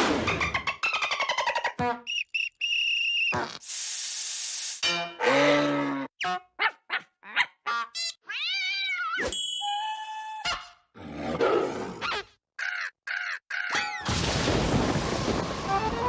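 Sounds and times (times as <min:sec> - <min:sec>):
whistle-like tones: 0:02.0 - 0:03.4.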